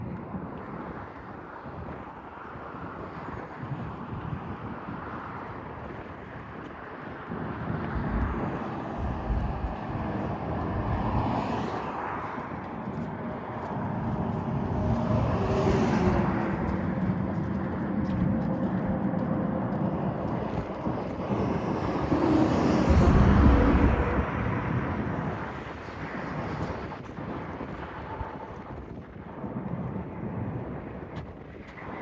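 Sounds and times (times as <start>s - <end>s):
vehicles going by: 7.8s - 26.9s
steady noise haze: 7.9s - 12.0s, 18.8s - 26.4s.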